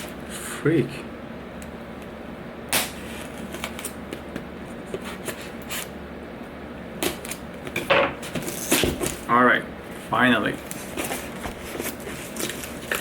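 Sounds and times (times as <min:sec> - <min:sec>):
knife scraping plastic packaging: 0:10.6 - 0:13.0.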